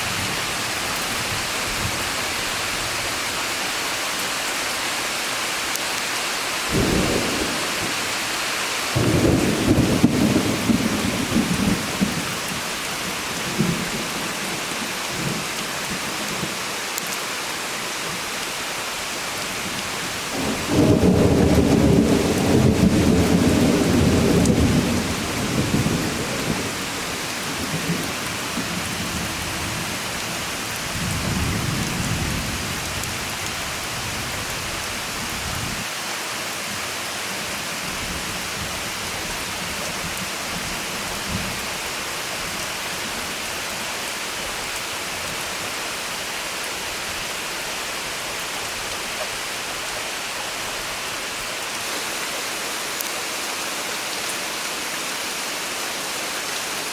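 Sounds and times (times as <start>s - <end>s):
steady rain: 0.0s - 56.9s
thunder rumbling: 6.7s - 8.1s, 9.0s - 12.4s, 20.3s - 28.2s.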